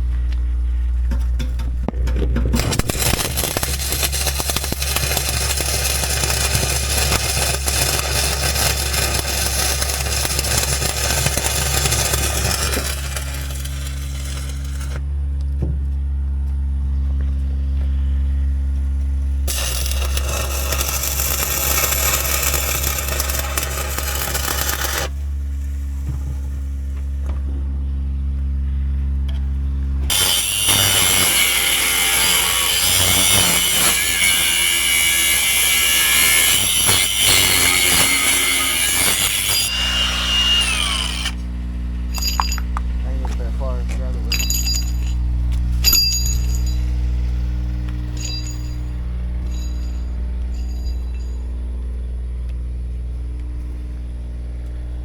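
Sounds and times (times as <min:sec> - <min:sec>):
welder engine running: 0:01.1 - 0:16.0, 0:17.8 - 0:55.0
arc welding crackle: 0:02.6 - 0:15.0, 0:19.3 - 0:27.2, 0:30.1 - 0:44.3.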